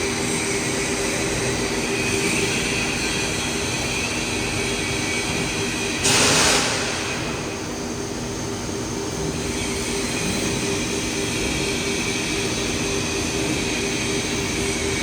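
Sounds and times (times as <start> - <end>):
machine mechanical hum: 0.0 - 15.0
short loud hiss: 6.0 - 7.6.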